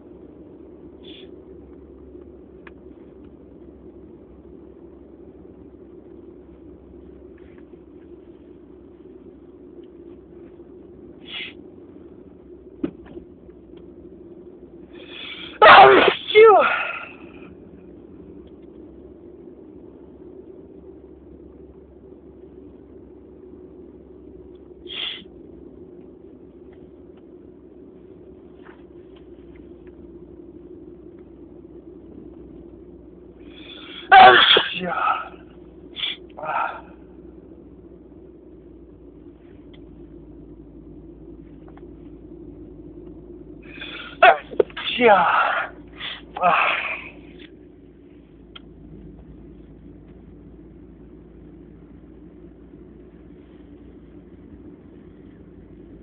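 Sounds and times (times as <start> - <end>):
low background hum: 0.0 - 56.0
low background rumble: 0.0 - 56.0
person sniffing: 1.0 - 1.3, 11.2 - 11.6, 24.9 - 25.3.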